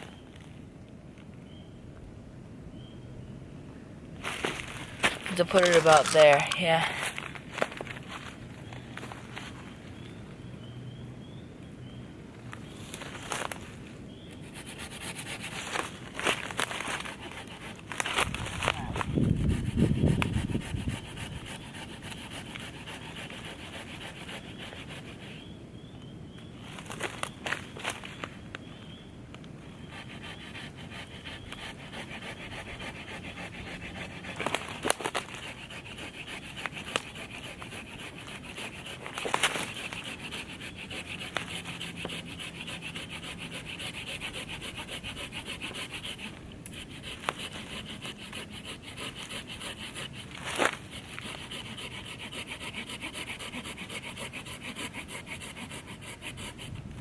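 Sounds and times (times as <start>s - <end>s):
handsaw sawing through wood: 14.5s - 15.9s, 16.5s - 25.3s, 29.9s - 56.8s.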